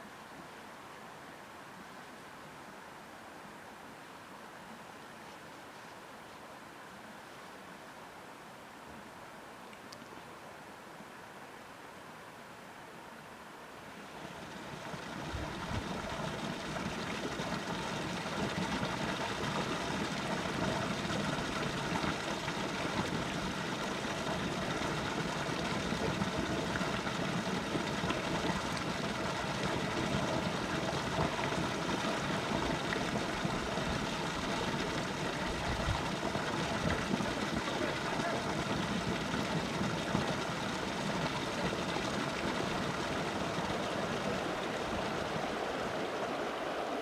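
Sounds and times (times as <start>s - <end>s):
flowing water: 0.0s - 47.0s.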